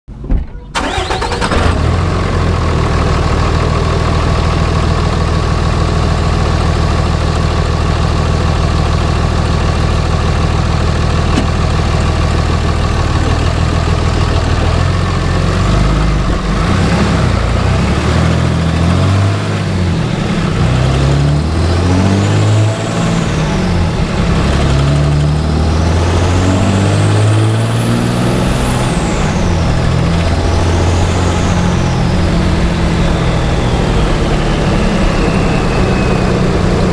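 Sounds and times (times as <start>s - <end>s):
diesel engine idling and revving: 0.7s - 36.9s
turbocharger whistle: 25.6s - 36.9s.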